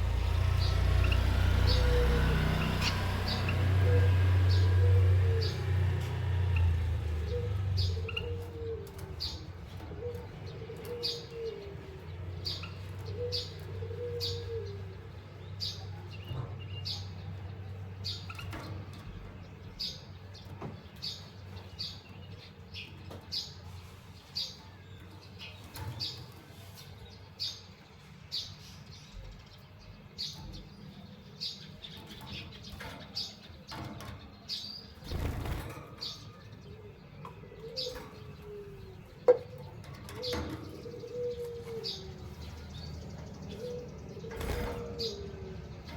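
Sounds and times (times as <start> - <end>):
cage birds chirping: 0.0 - 45.9
low wavering coo: 3.5 - 6.0, 7.2 - 15.2, 36.7 - 45.9.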